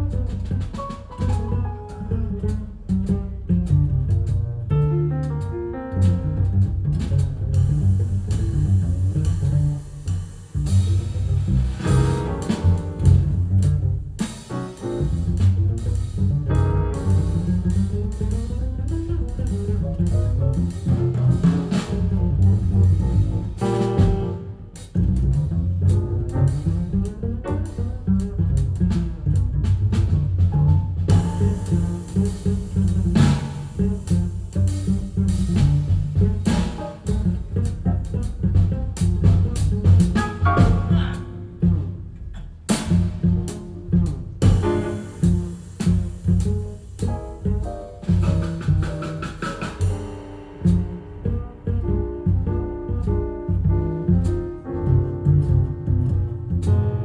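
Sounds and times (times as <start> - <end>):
music with heavy bass and percussion: 0.0 - 56.8
cymbal and drum hits: 31.1 - 37.2, 44.4 - 51.3.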